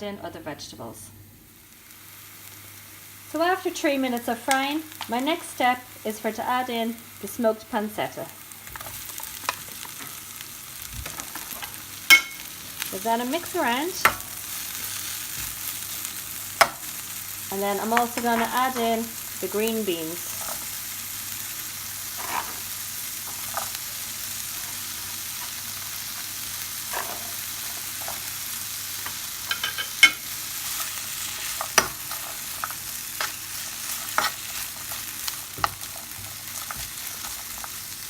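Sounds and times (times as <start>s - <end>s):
food sizzling in a frying pan: 0.0s - 38.0s
utensil scraping a pan: 22.1s - 23.8s, 24.5s - 28.3s, 29.0s - 37.8s.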